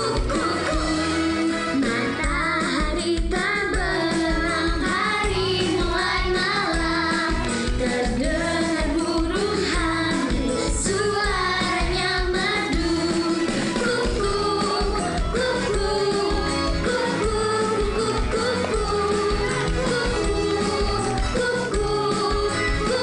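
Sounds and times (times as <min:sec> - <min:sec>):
children singing: 0:00.0 - 0:23.0
pop backing track with kick drum: 0:00.0 - 0:23.0.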